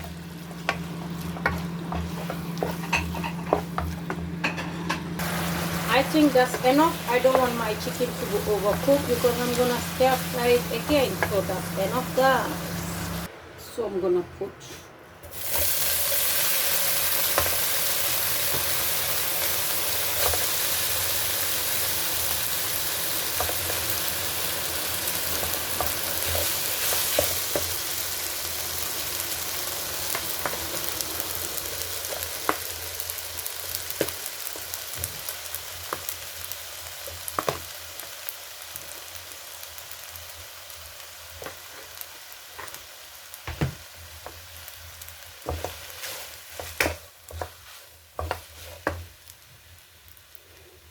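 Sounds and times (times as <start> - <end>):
food sizzling in hot oil: 5.2 - 13.3, 15.2 - 50.9.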